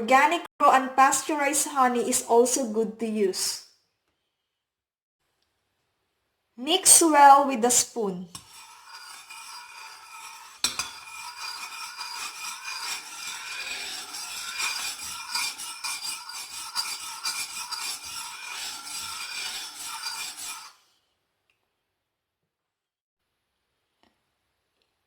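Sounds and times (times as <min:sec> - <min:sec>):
spoon stirring and clinking in cup: 0:08.4 - 0:20.8.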